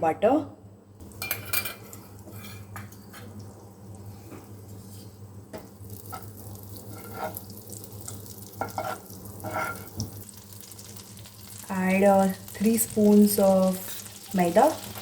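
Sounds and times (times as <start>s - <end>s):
spoon scraping a pan: 1.2s - 3.3s, 6.0s - 7.5s, 8.5s - 10.0s
butter sizzling in a pan: 5.7s - 15.0s.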